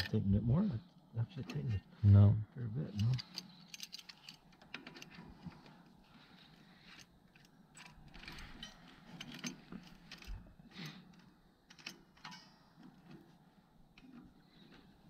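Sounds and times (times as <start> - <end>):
metallic clicks of hand tools: 11.1 - 12.6.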